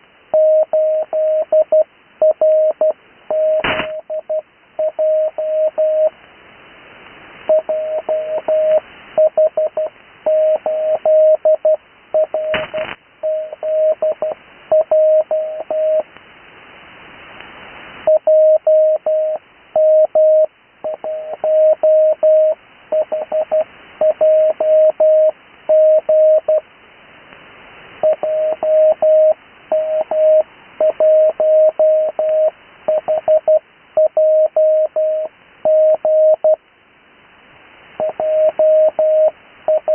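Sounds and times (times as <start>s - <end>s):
radio band hiss: 3.4s - 4.0s, 12.4s - 13.6s
short radio crackle: 3.6s - 4.0s, 12.5s - 13.1s
morse code tone: 7.5s - 12.6s, 13.2s - 16.0s, 28.0s - 36.6s, 38.0s - 39.9s.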